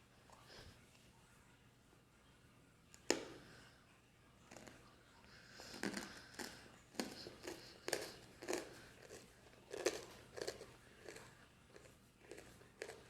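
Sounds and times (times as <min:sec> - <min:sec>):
person chewing crunchy food: 0:04.5 - 0:04.9, 0:05.5 - 0:13.0.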